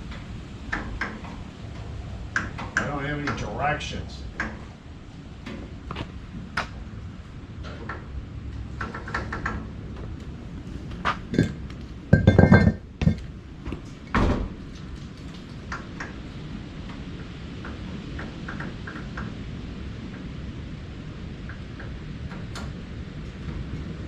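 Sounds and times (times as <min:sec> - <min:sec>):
loud ringing metal clatter: 0:11.2 - 0:13.3.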